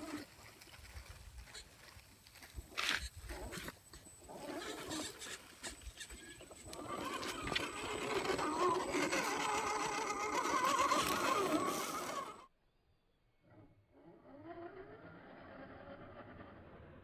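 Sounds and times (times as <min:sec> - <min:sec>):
electric motor and gears whining: 0:01.1 - 0:12.5
scattered clicks: 0:02.8 - 0:12.4.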